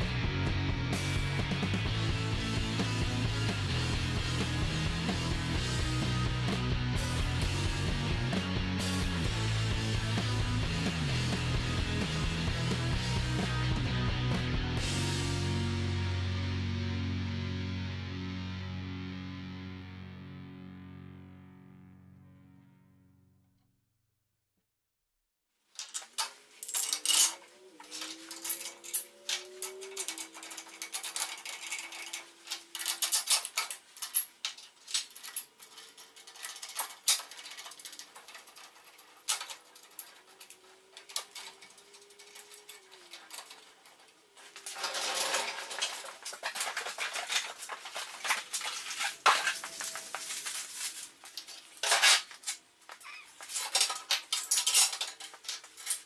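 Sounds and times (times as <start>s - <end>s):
steel parts clinking and scraping: 25.8s - 56.0s.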